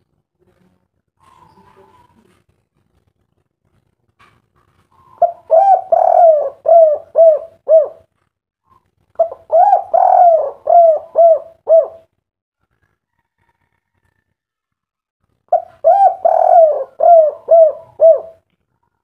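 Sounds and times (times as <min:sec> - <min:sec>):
dove cooing: 0:04.9 - 0:08.1, 0:08.7 - 0:12.1, 0:15.5 - 0:18.4.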